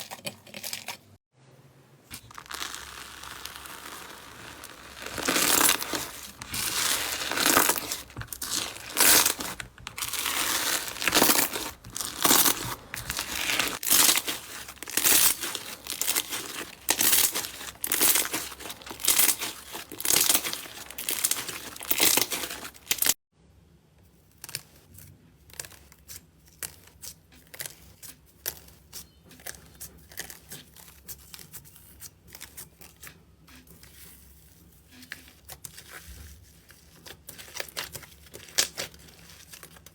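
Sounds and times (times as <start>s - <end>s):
slime crackling when squeezed: 2.2s - 23.1s.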